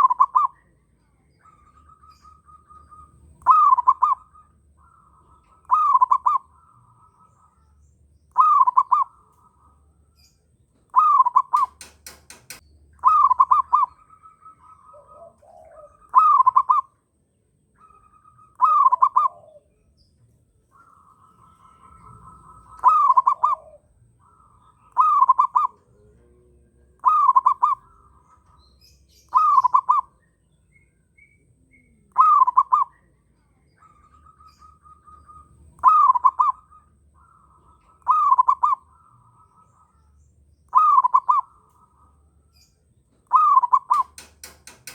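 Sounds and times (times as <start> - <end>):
dove cooing: 0.0 - 0.8, 1.4 - 17.0, 17.8 - 20.0, 20.7 - 44.9
clicks: 11.5 - 12.6, 43.9 - 44.9.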